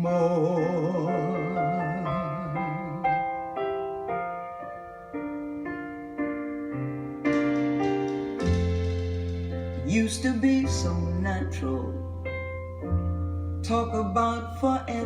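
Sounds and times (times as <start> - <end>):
solo piano notes: 0.0 - 15.0
bass line: 7.2 - 15.0.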